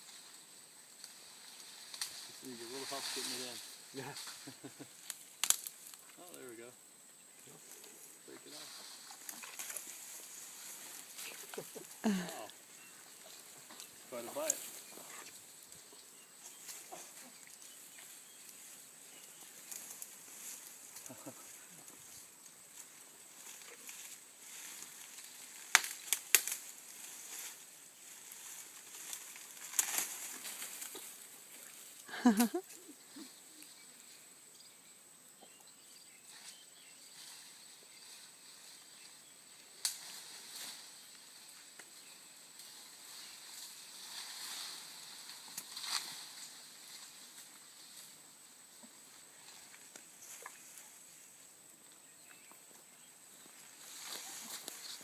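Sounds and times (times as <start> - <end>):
insects chirring: 0.0 - 55.0
crunching of wood and leaves: 1.1 - 6.7, 7.4 - 32.9, 39.8 - 48.2, 53.4 - 55.0
sharp crack: 5.0 - 6.0, 25.6 - 26.7, 29.1 - 31.0
light rustling: 7.6 - 33.3
elephant chewing branches: 8.6 - 15.8, 16.5 - 27.6, 28.2 - 31.3.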